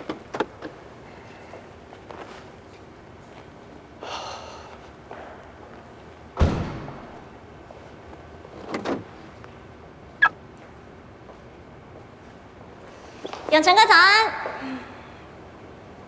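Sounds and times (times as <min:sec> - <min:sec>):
heavy thump: 0:06.4 - 0:07.3.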